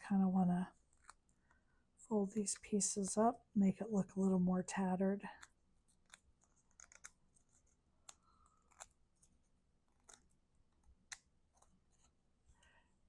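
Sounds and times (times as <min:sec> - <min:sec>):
cardstock being folded: 0:00.8 - 0:01.3, 0:05.4 - 0:12.2.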